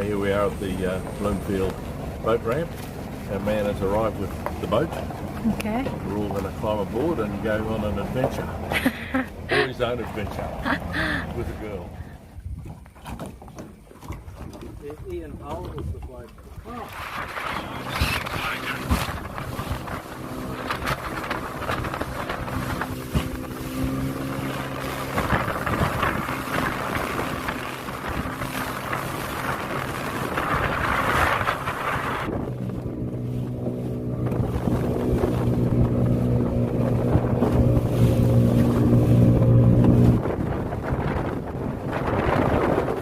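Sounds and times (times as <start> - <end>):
small boat motor running: 0.0 - 43.0
wind on microphone: 9.2 - 43.0.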